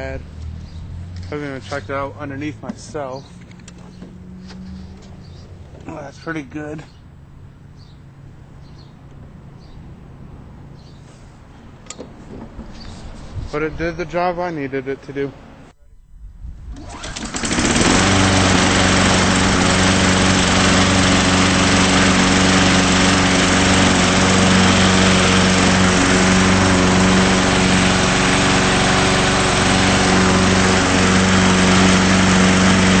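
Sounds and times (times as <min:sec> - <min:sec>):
lawn mower engine running: 0:16.7 - 0:33.0.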